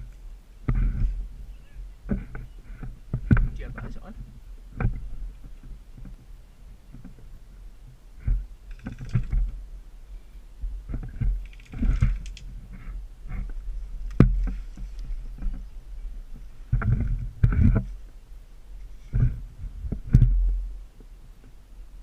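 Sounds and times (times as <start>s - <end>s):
microphone handling thumps: 0.0s - 6.3s, 8.2s - 9.6s, 10.6s - 18.0s, 19.0s - 20.7s.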